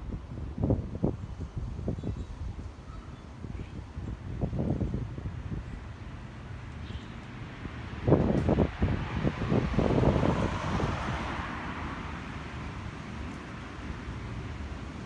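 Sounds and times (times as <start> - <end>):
gusty rumbling: 7.9 - 15.0.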